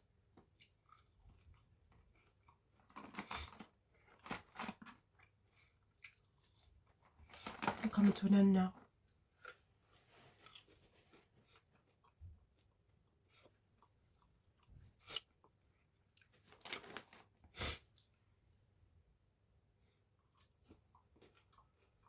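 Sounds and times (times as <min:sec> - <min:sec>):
person chewing food: 0:00.4 - 0:07.5, 0:09.1 - 0:17.0, 0:20.0 - 0:22.0.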